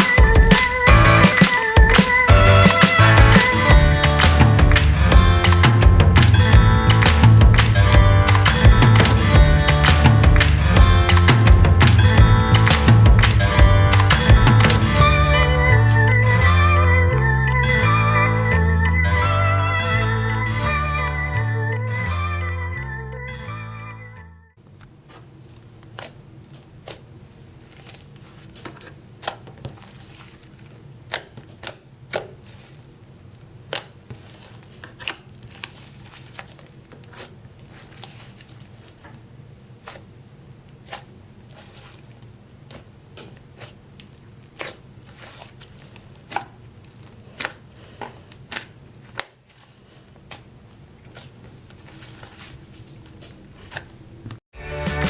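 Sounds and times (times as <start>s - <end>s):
steady low hum: 0.3s - 21.7s.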